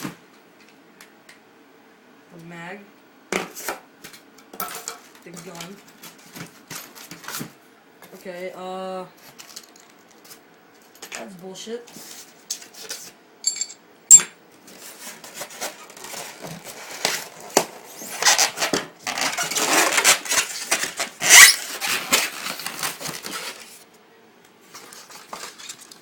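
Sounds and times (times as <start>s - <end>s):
packaging rustling and crinkling: 14.6s - 23.9s, 24.6s - 26.0s.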